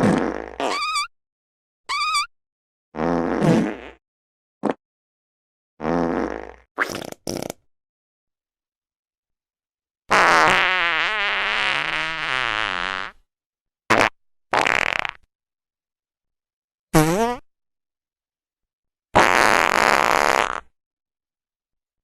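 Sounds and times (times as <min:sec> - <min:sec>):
fart sound effects: 0:00.0 - 0:01.1, 0:03.0 - 0:04.0, 0:05.8 - 0:07.6, 0:10.1 - 0:13.2, 0:13.9 - 0:15.2, 0:17.0 - 0:17.4, 0:19.2 - 0:20.7.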